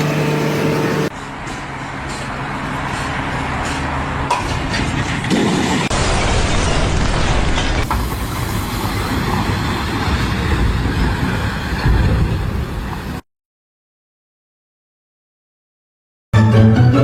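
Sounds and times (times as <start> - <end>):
machinery rumbling: 0.0 - 5.2.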